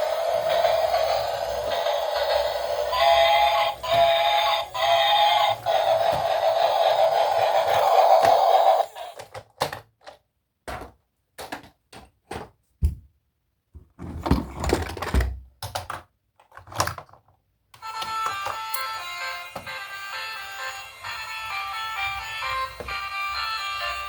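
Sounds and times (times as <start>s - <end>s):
toy vehicles and packaging handled: 0.0s - 12.6s, 14.1s - 24.0s
background music: 17.8s - 24.0s.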